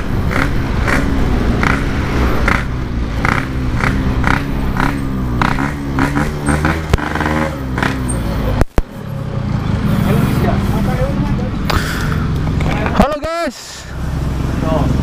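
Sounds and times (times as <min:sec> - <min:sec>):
two-stroke motorcycle engine revving: 0:00.0 - 0:08.4.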